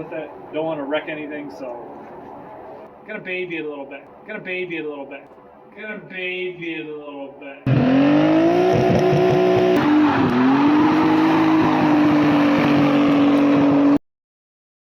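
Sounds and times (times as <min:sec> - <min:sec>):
car engine at high revs: 0:07.7 - 0:14.0.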